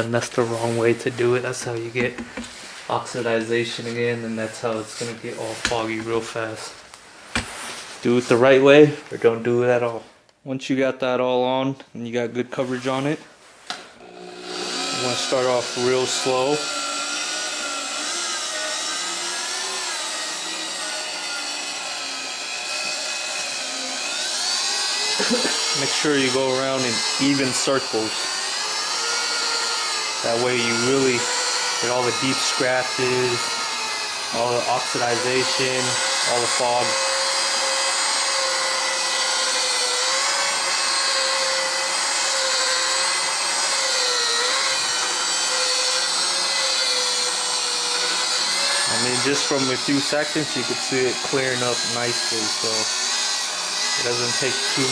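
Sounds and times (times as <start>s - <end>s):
power buffer whining: 14.0s - 54.9s.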